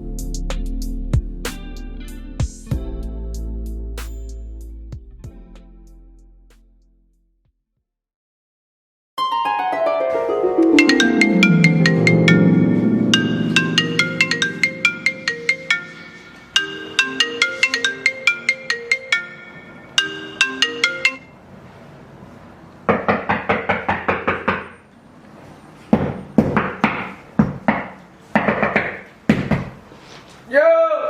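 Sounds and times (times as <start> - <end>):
marimba ringtone melody: 9.2 - 21.4
knocking on a door: 22.9 - 24.7, 26.0 - 29.8.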